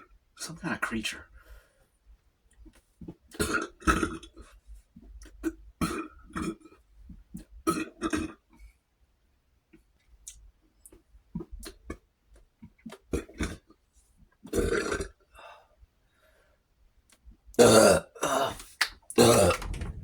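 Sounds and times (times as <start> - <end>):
man burping: 17.6 - 18.6.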